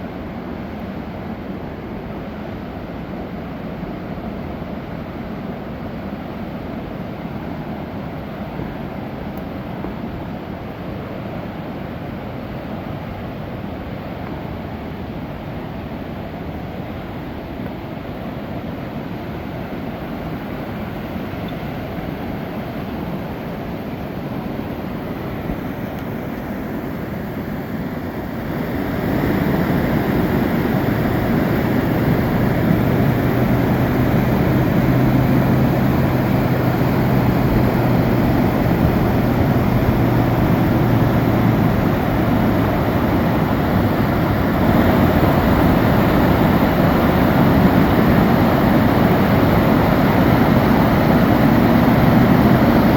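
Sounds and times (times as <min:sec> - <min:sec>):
low steady hum: 0:16.6 - 0:52.9
water rushing over falls: 0:17.7 - 0:52.9.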